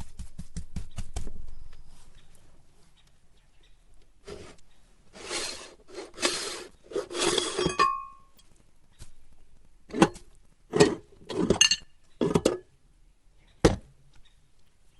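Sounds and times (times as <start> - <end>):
rasping scrapes on metal: 5.2 - 8.1.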